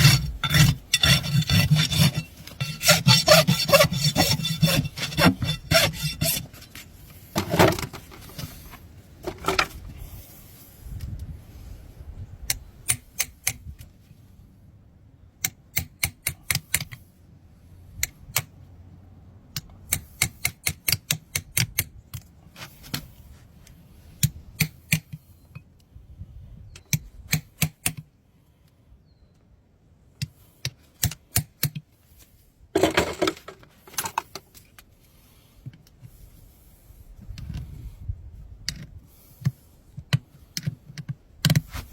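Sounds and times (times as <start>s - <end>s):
hand tools clicking on hoof: 0.0s - 6.4s
scraping hoof: 0.0s - 9.8s.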